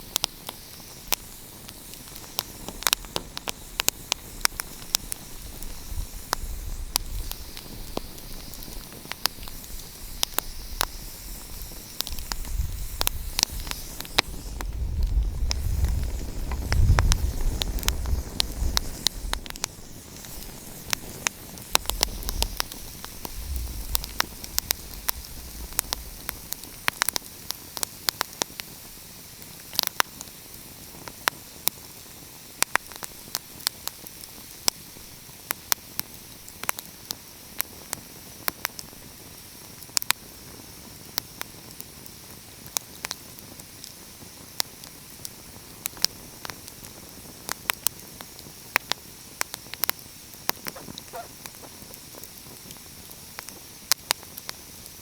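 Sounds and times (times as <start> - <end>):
soft fire hiss: 0.0 - 55.0
wood fire crackling and popping: 0.0 - 55.0
low rumble: 21.8 - 26.8.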